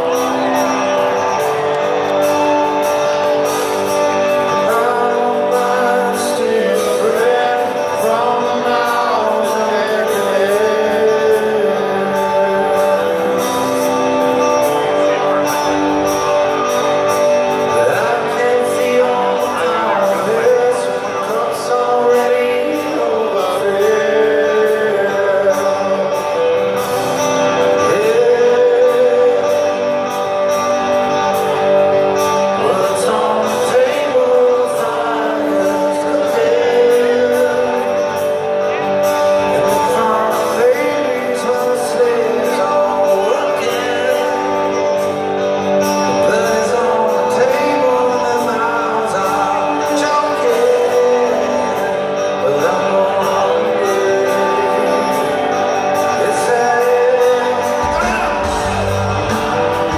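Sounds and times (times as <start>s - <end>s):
electric guitars: 0.0s - 59.9s
live rock band playing: 0.0s - 59.9s
man singing: 0.0s - 59.9s.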